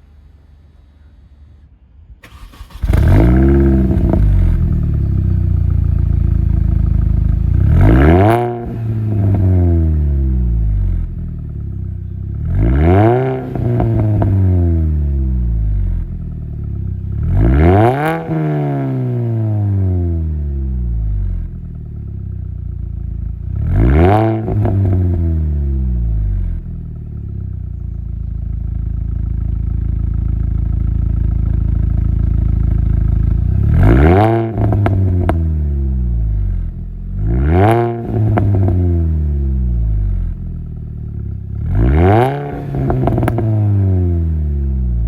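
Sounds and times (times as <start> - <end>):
car engine idling and revving: 0.0 - 45.0
exhaust crackles and pops: 27.8 - 35.5, 41.8 - 43.7.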